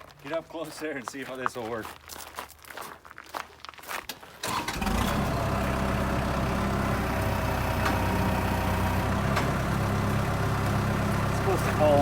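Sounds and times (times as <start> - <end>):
diesel engine idling: 4.4 - 12.0.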